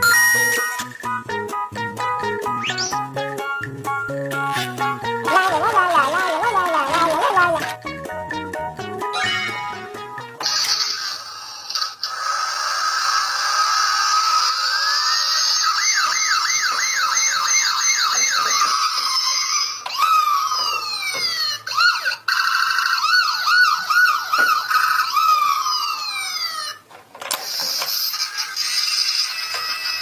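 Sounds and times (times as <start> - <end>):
electronic toy siren wailing: 13.2 - 26.8.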